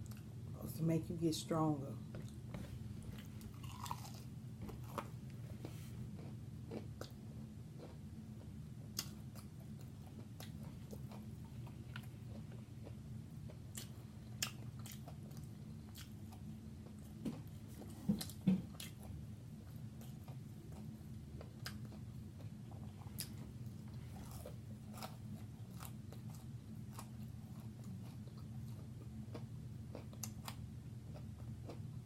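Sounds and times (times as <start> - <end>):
chewing food: 0.0 - 0.3, 2.0 - 32.0
low steady hum: 0.0 - 32.0.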